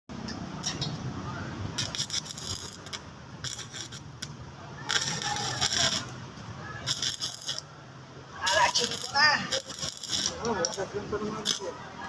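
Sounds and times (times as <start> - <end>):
arc welding crackling: 1.8 - 6.2, 6.8 - 7.7, 8.4 - 11.8.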